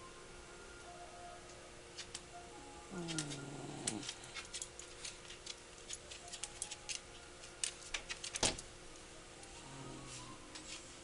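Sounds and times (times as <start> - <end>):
dog whimpering: 2.9 - 4.1.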